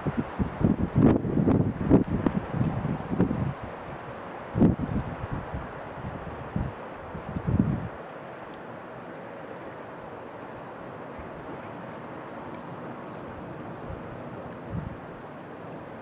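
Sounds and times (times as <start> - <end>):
wind buffeting microphone: 0.0 - 8.0, 13.5 - 15.2
rushing wind: 0.0 - 16.0.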